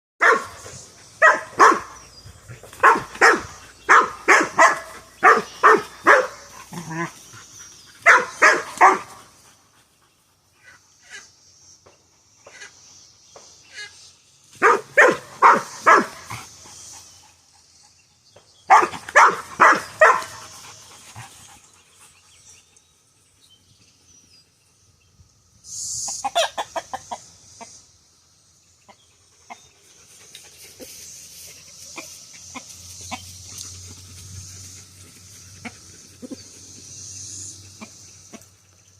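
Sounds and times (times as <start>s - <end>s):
rooster clucking: 26.1s - 27.2s.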